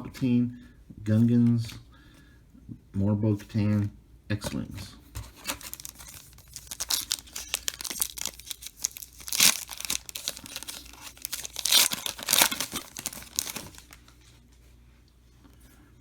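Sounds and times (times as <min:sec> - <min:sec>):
plastic wrapper ripping: 0:05.2 - 0:14.1
plastic wrapper crinkling: 0:05.2 - 0:14.3.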